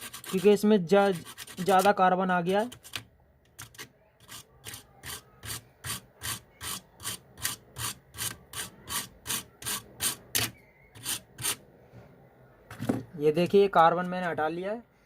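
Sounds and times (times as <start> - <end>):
hand file rasping: 0.0 - 1.9, 4.2 - 11.6.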